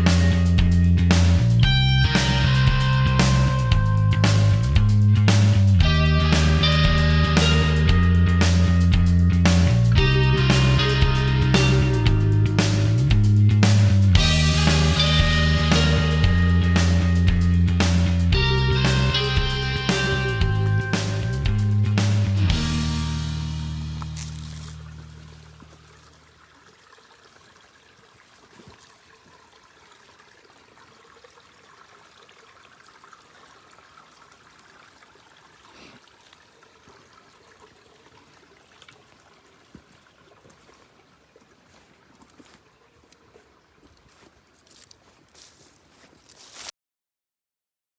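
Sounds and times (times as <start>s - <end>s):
rock music with guitar: 0.0s - 25.2s
stream water trickling: 0.0s - 46.6s.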